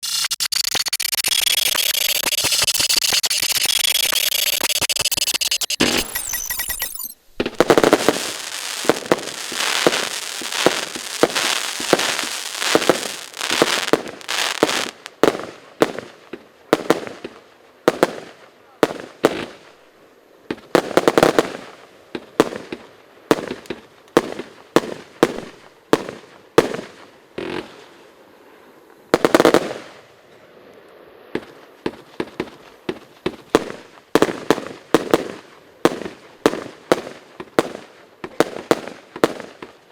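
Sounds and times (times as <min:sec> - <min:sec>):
loud fireworks bursting breaks: 0:00.0 - 0:16.1
fireworks cake firing shots: 0:07.4 - 0:16.1, 0:31.4 - 0:39.8.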